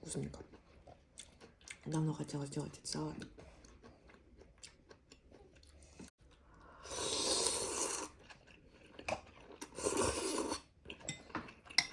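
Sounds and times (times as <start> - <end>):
chewing: 0.2 - 2.0, 3.2 - 6.7, 7.6 - 11.9.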